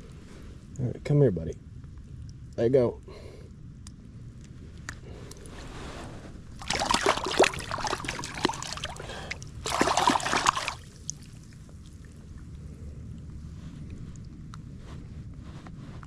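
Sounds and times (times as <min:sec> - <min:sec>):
low wind rumble: 0:00.0 - 0:16.0
fish splashing in water: 0:06.6 - 0:11.6.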